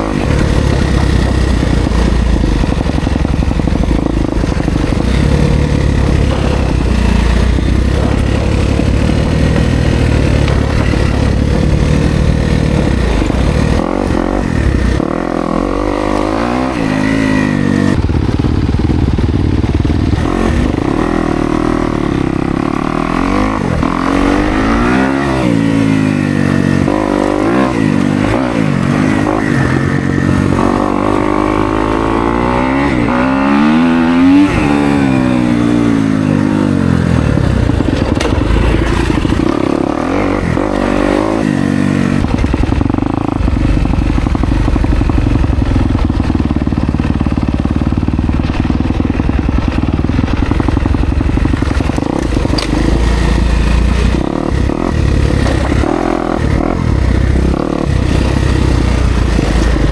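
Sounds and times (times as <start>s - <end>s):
dirt bike engine revving: 0.0s - 59.9s.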